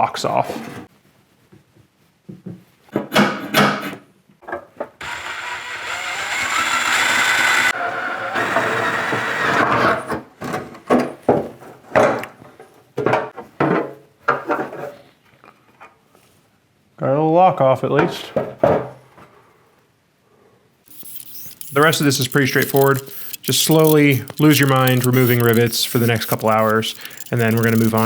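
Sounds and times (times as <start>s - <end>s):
power drill boring metal: 5.0s - 9.7s, 20.9s - 28.0s
sharp clicks and knocks: 20.9s - 28.0s.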